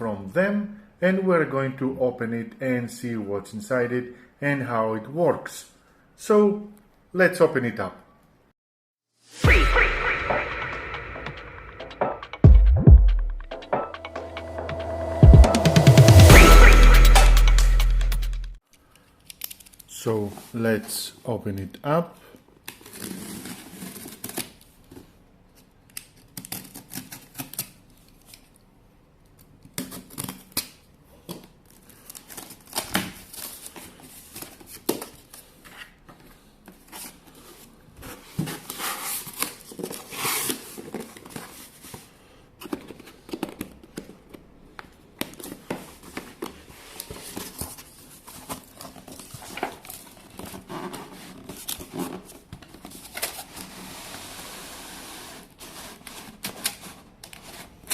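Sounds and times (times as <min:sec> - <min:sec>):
packing tape tearing: 0:26.0 - 0:28.6, 0:29.6 - 0:35.3.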